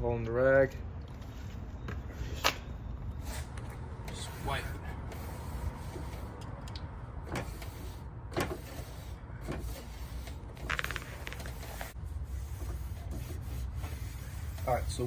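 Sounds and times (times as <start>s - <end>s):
rag rubbing on car paint: 7.4s - 15.0s.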